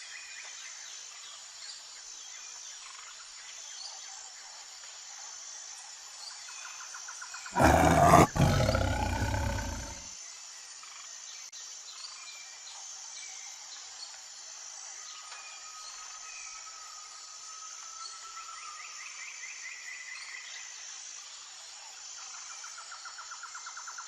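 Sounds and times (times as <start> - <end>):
deep animal roar: 7.6 - 10.0.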